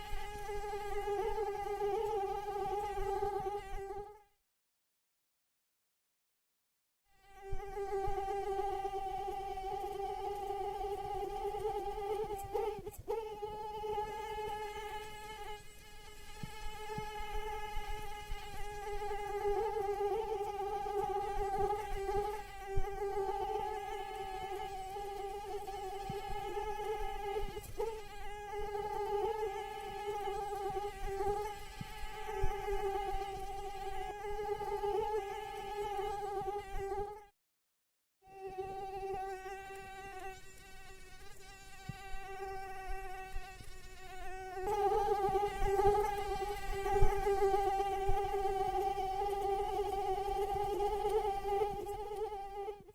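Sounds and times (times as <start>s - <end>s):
mosquito wings whining: 7.2s - 37.2s, 38.4s - 52.9s.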